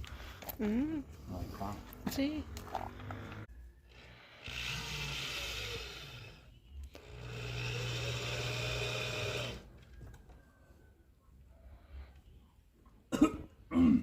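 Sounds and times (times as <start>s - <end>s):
electric drill running: 3.0s - 9.7s.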